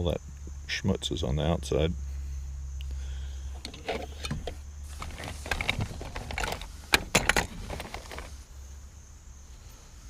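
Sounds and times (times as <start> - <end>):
electronic parts rattling in a box: 3.6 - 8.4.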